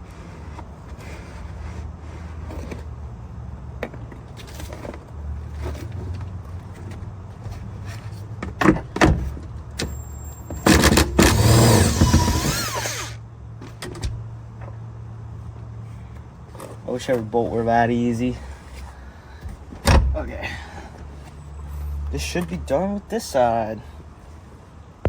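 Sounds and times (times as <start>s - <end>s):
power tool winding down: 10.7s - 13.2s.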